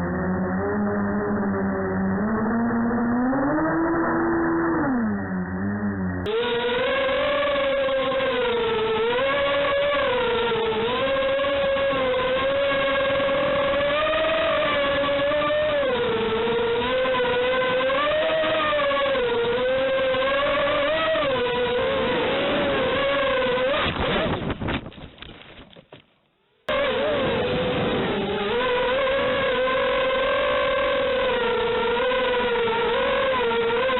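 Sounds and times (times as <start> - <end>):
quadcopter motors whining: 0.0 - 24.7, 26.7 - 33.9.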